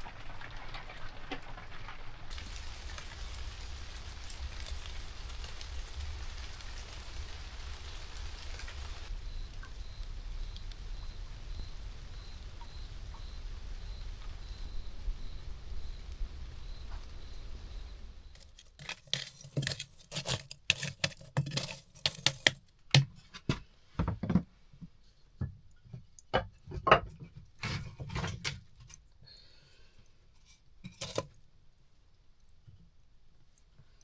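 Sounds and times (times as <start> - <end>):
objects clinking and knocking: 18.4 - 23.1, 30.9 - 31.4.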